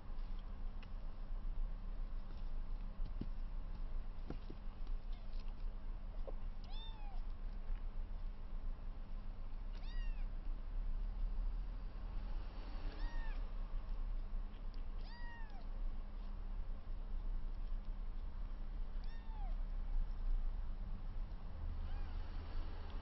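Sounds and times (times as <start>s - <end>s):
kitten mewing: 6.7s - 7.2s, 9.8s - 10.3s, 12.9s - 13.4s, 15.0s - 15.7s, 19.0s - 19.6s.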